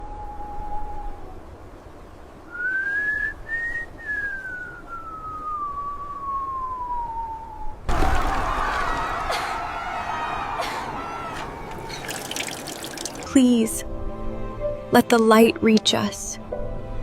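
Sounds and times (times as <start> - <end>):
whistled tone sliding down: 0.0 - 1.2, 2.5 - 7.8.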